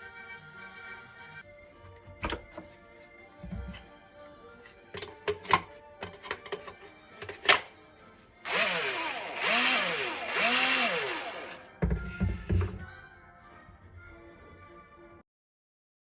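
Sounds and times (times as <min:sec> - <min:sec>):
small electric motor whirring: 0:08.4 - 0:11.7.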